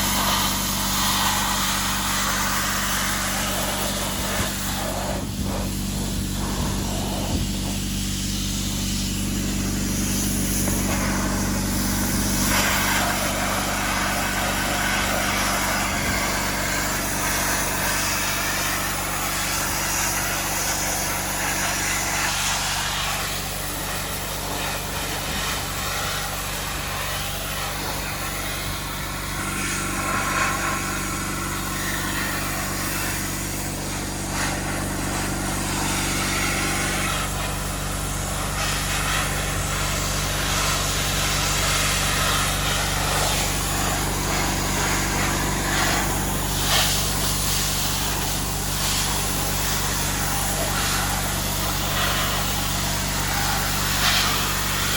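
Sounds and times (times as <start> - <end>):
machine hum: 0.0 - 20.0
sandblasting hiss: 0.0 - 54.9.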